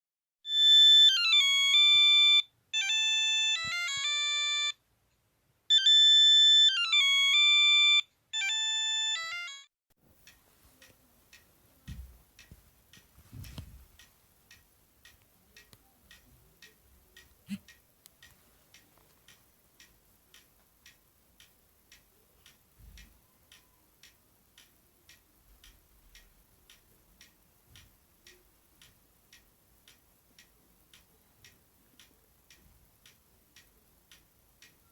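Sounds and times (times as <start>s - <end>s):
electronic phone startup melody: 0.5s - 4.8s, 5.7s - 9.7s
faint regular ticking: 10.1s - 34.9s
soft thumps: 11.8s - 14.0s.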